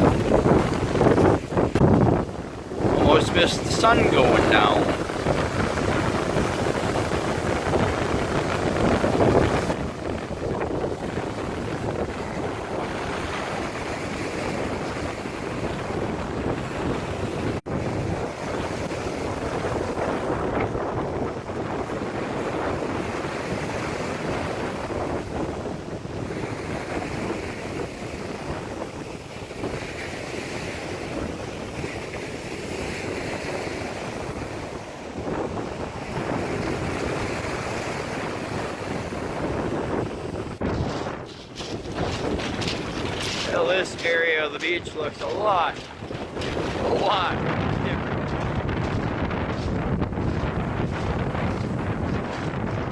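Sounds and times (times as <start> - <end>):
waves washing on shore: 0.0 - 52.9
wind rumbling on microphone: 0.0 - 52.9.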